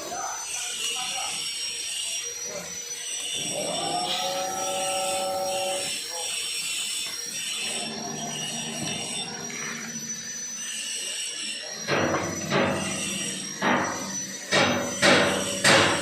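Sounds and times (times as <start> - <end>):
steady high whine: 3.4 - 6.4, 7.0 - 16.0
hammer striking steel: 11.9 - 16.0.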